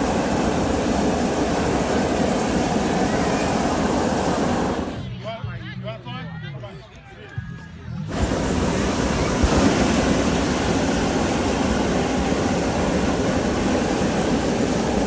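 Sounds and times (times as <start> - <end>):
propane burner roaring: 0.0 - 5.0, 8.1 - 15.0.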